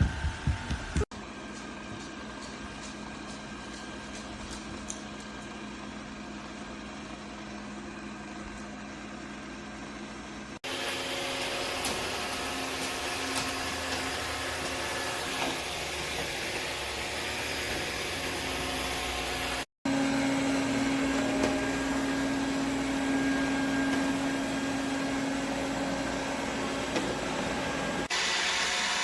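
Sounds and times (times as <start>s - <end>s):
robot vacuum humming: 10.6s - 29.0s.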